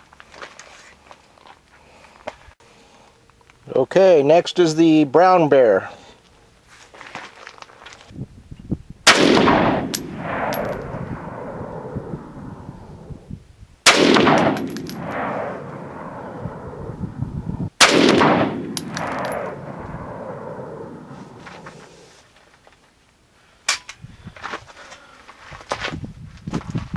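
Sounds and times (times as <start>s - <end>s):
rolling gunshot echo: 9.1s - 11.9s, 13.9s - 16.2s, 17.8s - 21.0s
rifle shots: 9.1s - 12.0s, 13.9s - 16.2s, 17.8s - 21.1s.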